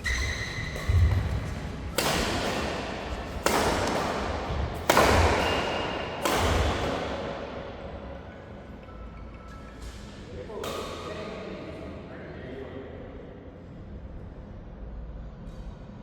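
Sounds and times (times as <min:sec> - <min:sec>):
badminton racket hitting shuttlecock: 0:00.1 - 0:07.8.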